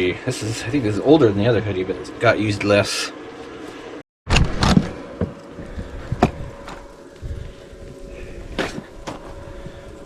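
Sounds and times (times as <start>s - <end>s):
faint steady hum: 4.6s - 10.0s.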